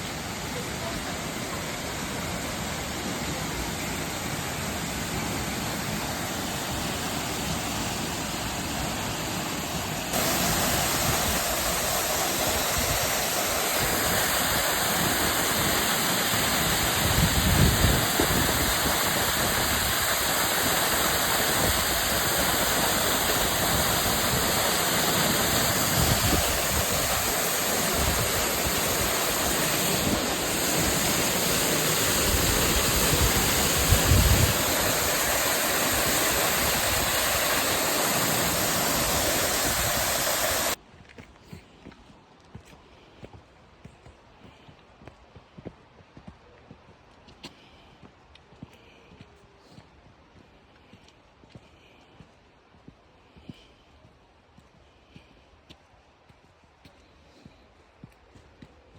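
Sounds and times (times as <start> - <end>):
waterfall rushing: 0.0 - 40.8.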